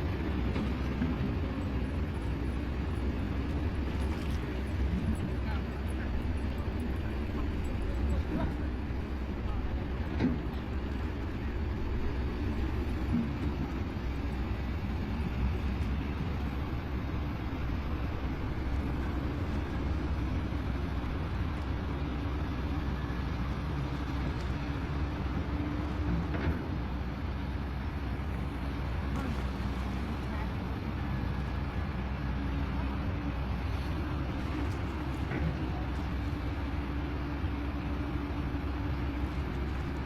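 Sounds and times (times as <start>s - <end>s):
heavy diesel engine droning: 0.0s - 40.0s.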